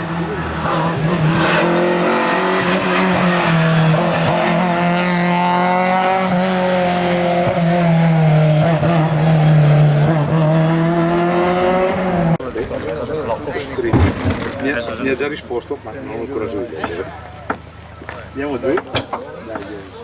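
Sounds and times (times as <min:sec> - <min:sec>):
rally car engine revving: 0:00.0 - 0:15.2.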